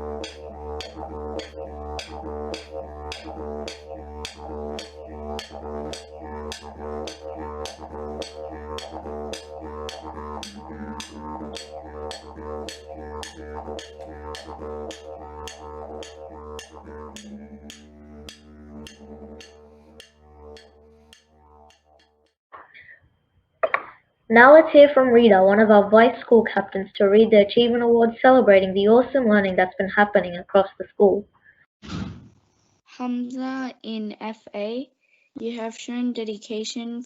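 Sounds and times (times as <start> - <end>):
didgeridoo drone: 0.0 - 22.1, 24.3 - 30.5
sharp percussive tap: 0.2 - 22.1, 23.6 - 24.0.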